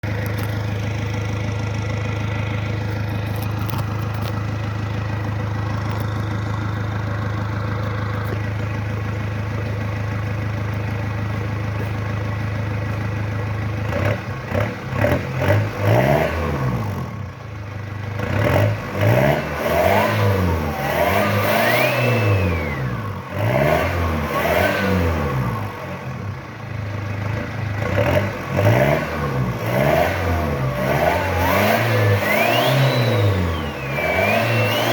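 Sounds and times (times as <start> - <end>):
car engine idling and revving: 0.0 - 34.9
exhaust whistle: 30.6 - 34.9.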